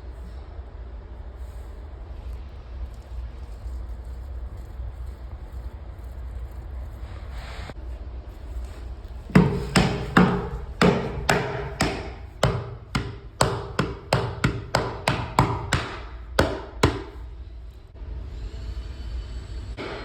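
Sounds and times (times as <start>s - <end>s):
hammer strikes ringing: 9.3s - 17.2s.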